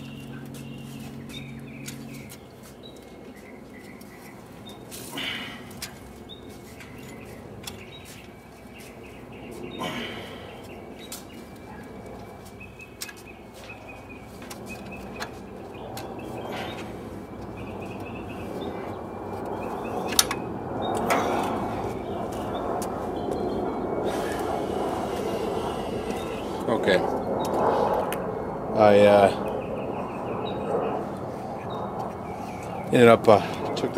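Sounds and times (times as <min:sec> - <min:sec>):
birds chirping: 0:00.0 - 0:33.9.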